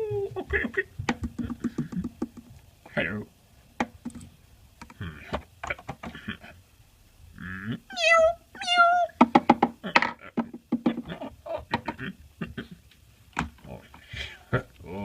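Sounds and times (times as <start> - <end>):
cat meowing: 7.9 - 9.2.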